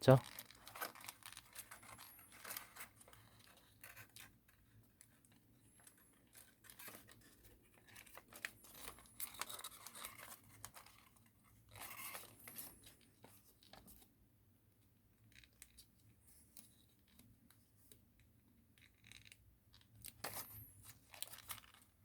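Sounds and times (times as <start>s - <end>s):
paper rustling and crinkling: 0.0s - 14.1s, 20.0s - 22.0s.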